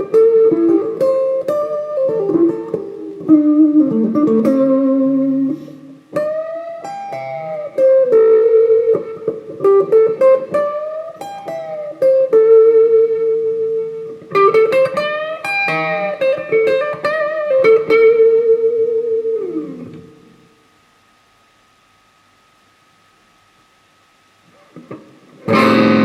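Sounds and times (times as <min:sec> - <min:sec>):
electric guitar playing: 0:00.0 - 0:20.5, 0:24.5 - 0:26.0
faint amp hiss: 0:00.0 - 0:26.0
steady high hum: 0:00.0 - 0:26.0.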